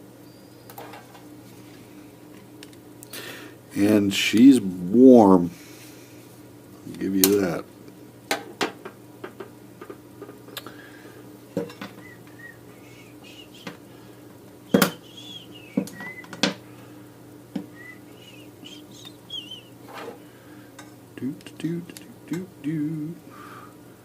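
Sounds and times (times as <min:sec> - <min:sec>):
low hum: 0:11.4 - 0:19.8.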